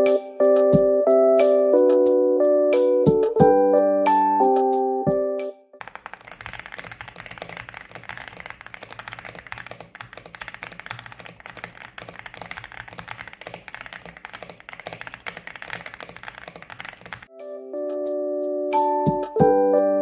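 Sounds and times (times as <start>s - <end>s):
mechanical keyboard typing: 5.8s - 17.3s.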